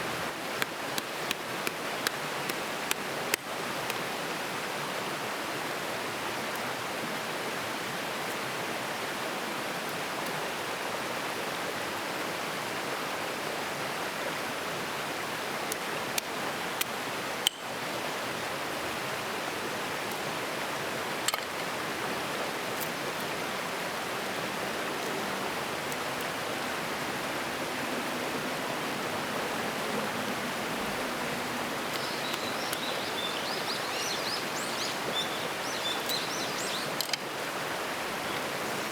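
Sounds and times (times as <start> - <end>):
mountain stream rushing: 0.0 - 38.9
bird chirping: 32.0 - 37.1.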